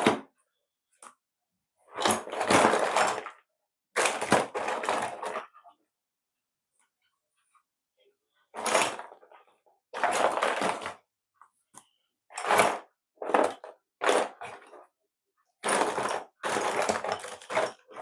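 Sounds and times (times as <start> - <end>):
plastic pieces rattling and clicking: 1.9 - 3.4, 4.0 - 5.5, 10.0 - 11.0, 15.6 - 18.0.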